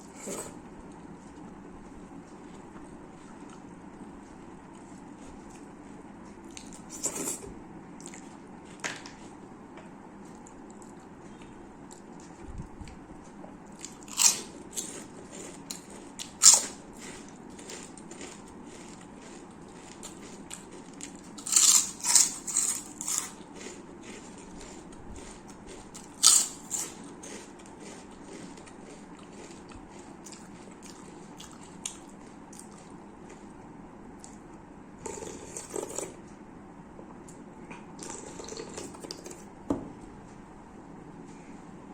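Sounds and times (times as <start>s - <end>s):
chewing crunchy food: 0.0s - 36.4s, 37.2s - 39.5s
wet eating sounds: 8.0s - 9.4s.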